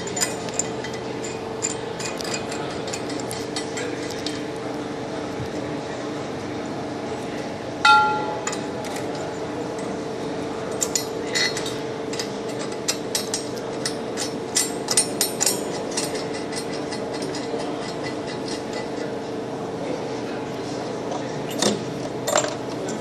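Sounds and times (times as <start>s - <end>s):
steady machine hum: 0.0s - 23.0s
metal object struck ringing: 7.8s - 8.6s.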